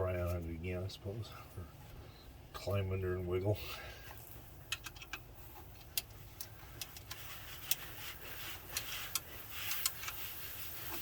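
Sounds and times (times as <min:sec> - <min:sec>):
screwdriver clicks and scrapes: 0:08.7 - 0:10.3.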